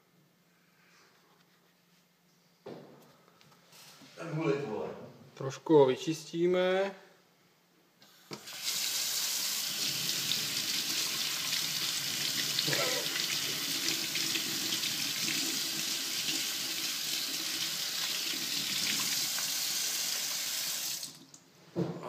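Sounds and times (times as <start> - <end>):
tap water running into a sink: 8.4 - 21.4.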